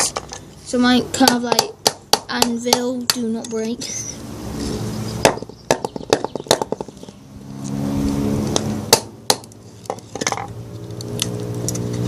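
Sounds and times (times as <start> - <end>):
passing car engine: 4.2 - 5.3, 6.7 - 12.0.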